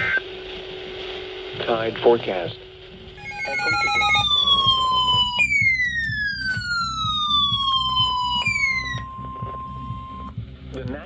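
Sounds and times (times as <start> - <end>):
steady alert tone: 3.2 - 9.2
falling electronic siren tone: 3.2 - 10.3
short beeps: 3.2 - 10.3.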